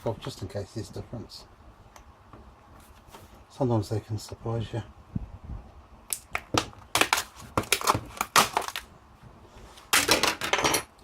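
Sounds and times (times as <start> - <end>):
plastic clips snapping and cracking: 6.1 - 8.9.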